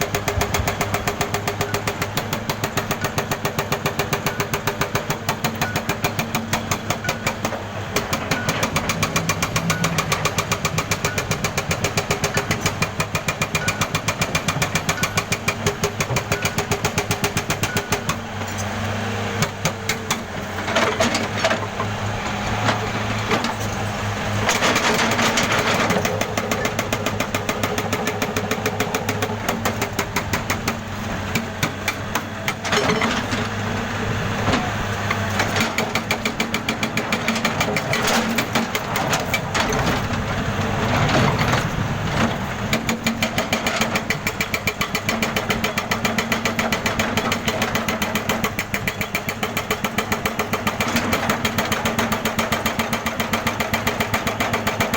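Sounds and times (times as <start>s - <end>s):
jackhammer pounding: 0.0s - 18.2s, 22.4s - 33.8s, 34.4s - 54.9s
low engine hum: 7.5s - 12.9s.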